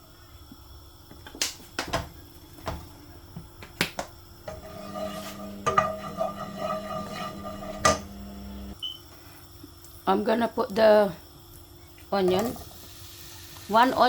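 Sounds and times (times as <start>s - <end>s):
steady hum: 4.3s - 8.8s
cookware clicks and knocks: 7.8s - 8.1s.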